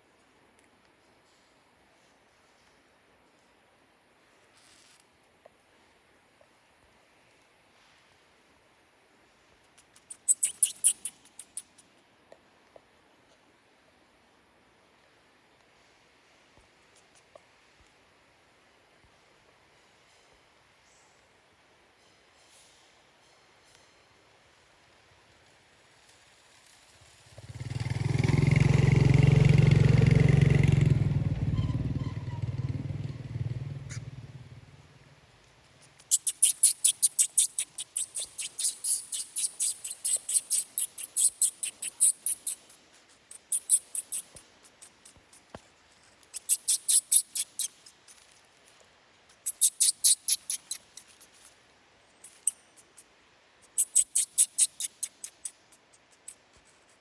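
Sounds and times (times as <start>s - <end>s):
baby monkey squeaking: 10.0s - 11.8s, 31.6s - 32.4s, 35.8s - 45.2s, 46.3s - 48.2s, 49.4s - 51.4s, 52.2s - 53.0s, 53.6s - 56.5s
sharp high chirps: 10.1s - 11.6s, 36.0s - 42.6s, 43.3s - 44.3s, 46.4s - 47.7s, 49.5s - 51.0s, 53.8s - 55.6s
motorcycle passing by: 27.1s - 35.2s.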